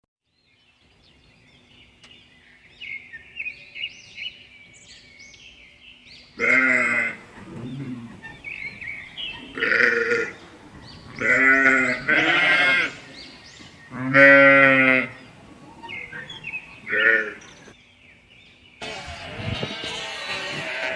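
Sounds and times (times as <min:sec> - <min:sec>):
small birds chirping: 0:00.3 - 0:18.8
sheep bleating: 0:06.4 - 0:17.7, 0:20.0 - 0:20.9.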